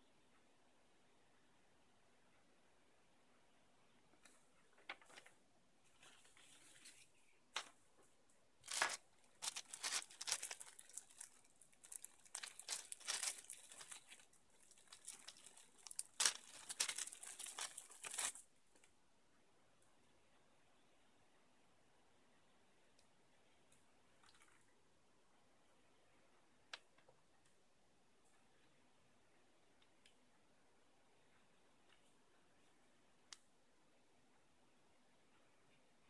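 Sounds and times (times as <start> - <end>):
packaging crinkling: 8.6 - 18.4.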